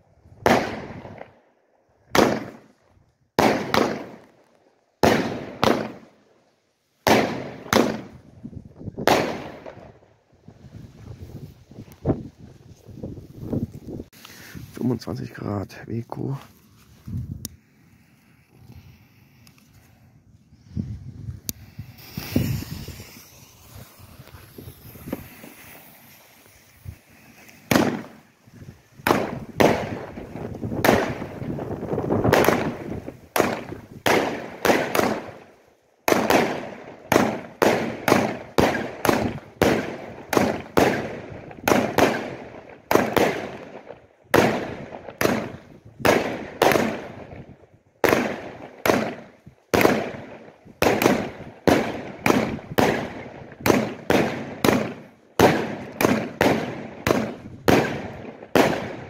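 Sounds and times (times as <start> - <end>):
firework bangs: 0.4 - 1.3, 2.1 - 4.4, 5.0 - 6.3, 7.0 - 10.1, 21.4 - 59.0
firework hissing and crackling: 6.9 - 14.9, 16.5 - 43.8.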